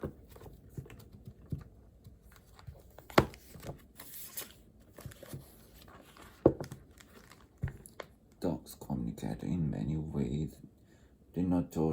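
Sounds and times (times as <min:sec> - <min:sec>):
paper rustling: 0:00.0 - 0:08.1.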